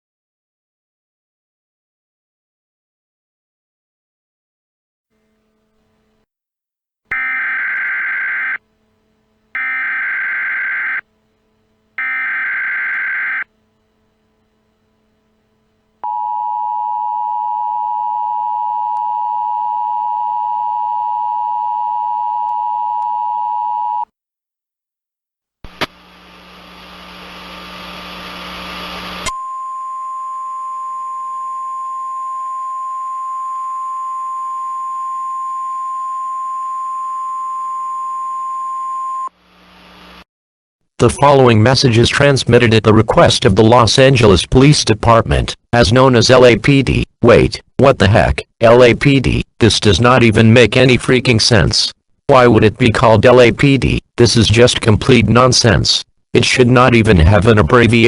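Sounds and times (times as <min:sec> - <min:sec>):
burst of static: 0:07.1 - 0:08.6
two-tone attention signal: 0:07.1 - 0:08.6, 0:09.6 - 0:11.0, 0:12.0 - 0:13.5
buzzy data bursts: 0:07.1 - 0:08.7, 0:09.5 - 0:11.2, 0:11.9 - 0:13.6
steady single-pitch alert tone: 0:07.1 - 0:08.7, 0:09.6 - 0:11.2, 0:12.0 - 0:13.6.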